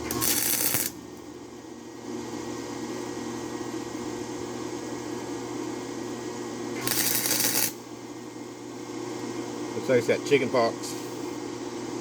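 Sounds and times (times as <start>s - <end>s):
arc welding crackle: 0.0s - 1.3s, 6.7s - 7.9s.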